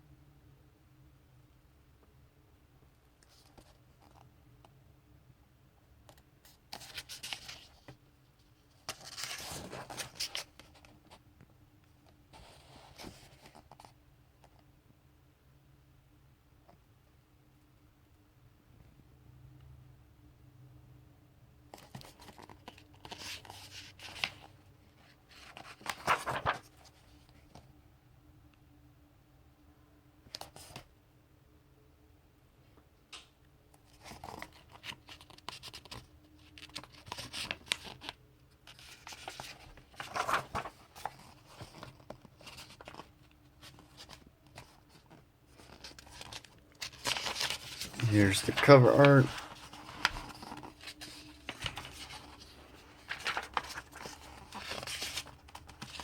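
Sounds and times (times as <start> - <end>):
faint steady hum: 0.0 - 34.1
paper pages rustling: 6.1 - 8.0, 8.7 - 11.2, 21.7 - 27.7, 33.9 - 56.0.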